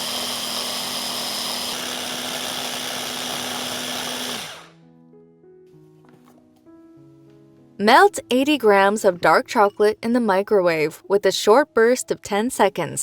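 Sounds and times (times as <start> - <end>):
blender motor running: 0.0 - 4.8
soft background music: 4.8 - 13.0.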